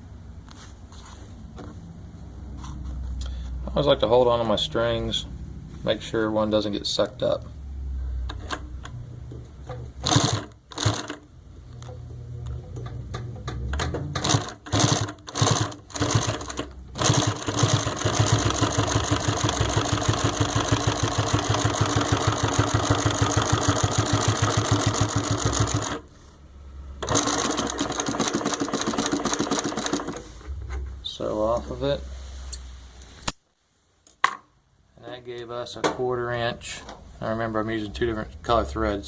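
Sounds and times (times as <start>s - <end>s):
sewing machine stitching: 10.0s - 11.2s, 13.7s - 26.0s, 27.0s - 30.3s.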